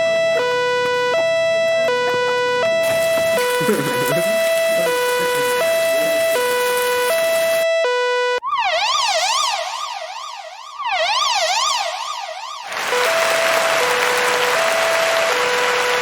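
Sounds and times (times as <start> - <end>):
ambulance siren: 0.0 - 16.0
steady hiss: 2.8 - 7.6.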